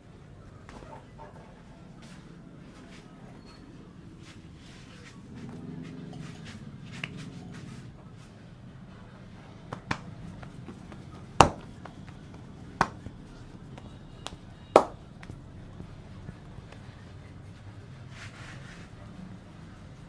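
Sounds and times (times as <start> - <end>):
sharp hand slaps: 9.7 - 13.2, 13.8 - 15.4.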